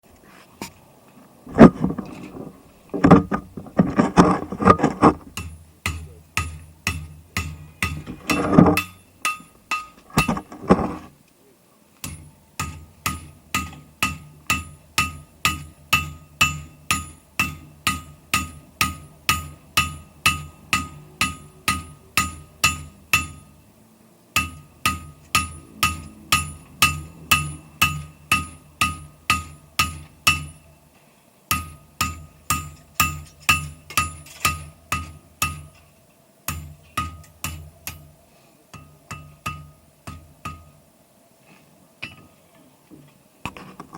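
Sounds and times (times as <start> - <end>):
hammer striking metal on anvil: 12.0 - 23.5, 24.4 - 30.6, 38.7 - 40.7.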